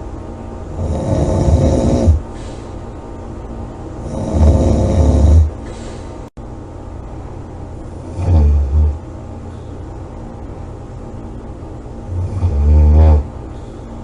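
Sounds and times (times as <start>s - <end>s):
person snoring loudly: 0.7s - 2.3s, 4.0s - 5.6s, 8.0s - 9.1s, 12.1s - 13.4s.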